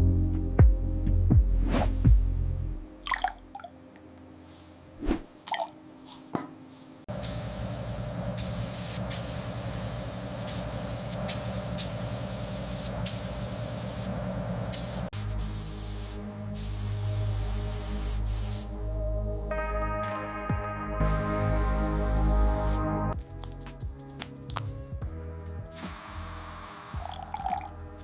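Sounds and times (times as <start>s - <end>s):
spray hissing: 7.2s - 14.1s, 14.7s - 18.7s, 25.7s - 27.2s.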